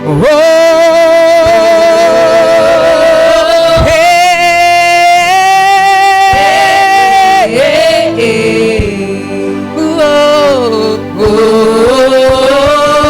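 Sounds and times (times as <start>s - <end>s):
backing music: 0.0s - 13.0s
singer holding long notes: 0.0s - 13.0s
low drum beats: 1.4s - 10.3s.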